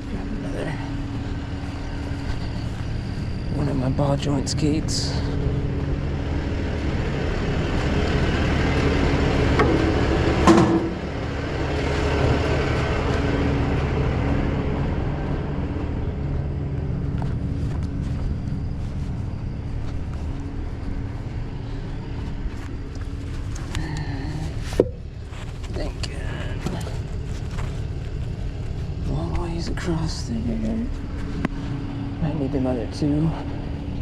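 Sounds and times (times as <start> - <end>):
truck engine idling: 0.0 - 34.0
metal clank: 9.6 - 11.0.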